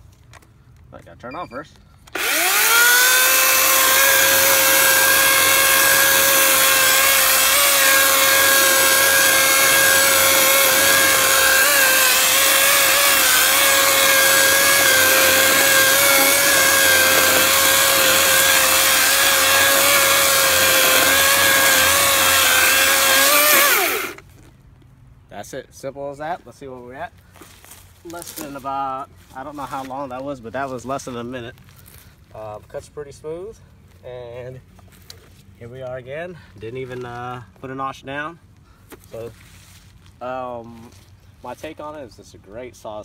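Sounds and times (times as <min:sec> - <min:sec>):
electric chainsaw cutting tree trunk: 0:02.1 - 0:24.3.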